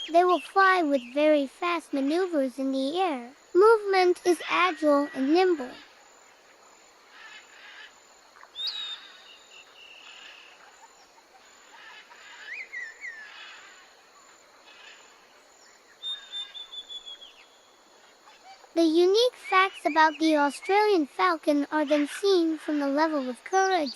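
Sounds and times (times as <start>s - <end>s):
bird calls and chirps: 0.0s - 6.0s, 7.2s - 23.9s
faint outdoor hiss: 0.0s - 23.9s.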